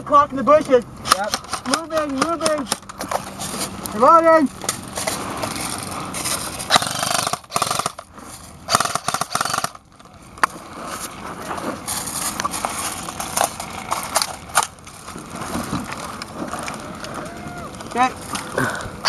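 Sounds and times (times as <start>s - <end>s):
airsoft guns firing: 1.1s - 2.9s, 6.7s - 8.0s, 8.7s - 9.8s.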